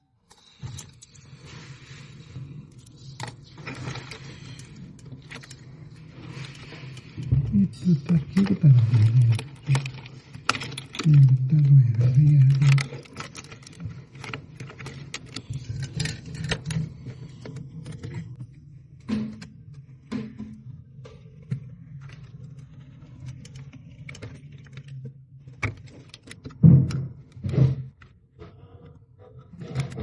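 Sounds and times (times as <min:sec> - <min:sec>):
small parts clicking and rattling: 0:00.2 - 0:20.5, 0:21.1 - 0:27.4.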